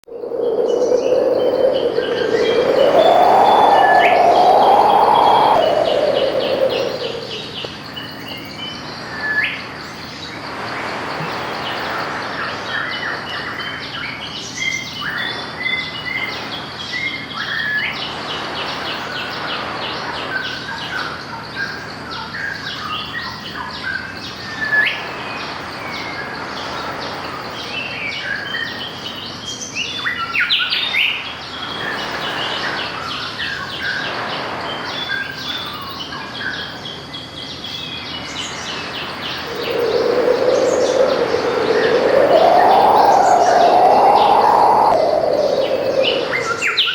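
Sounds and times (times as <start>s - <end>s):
loud swelling sound: 0.1s - 7.7s, 39.4s - 46.9s
surf hissing: 0.2s - 7.8s, 39.1s - 46.9s.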